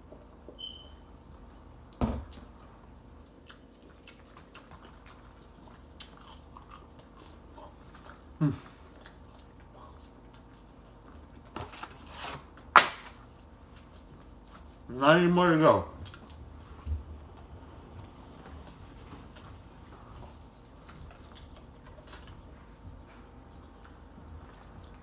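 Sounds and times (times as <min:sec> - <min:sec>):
person chewing food: 0:01.9 - 0:11.6, 0:16.0 - 0:25.0.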